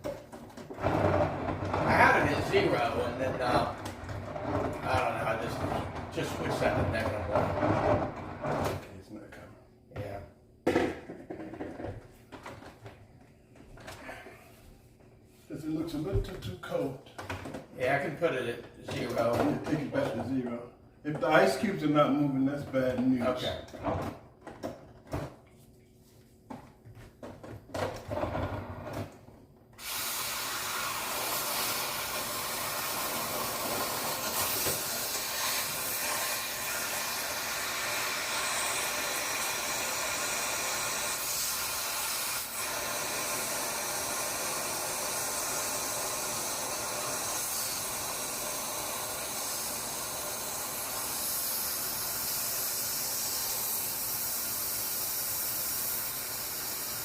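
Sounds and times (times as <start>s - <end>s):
heat tool blowing hiss: 29.8s - 57.0s.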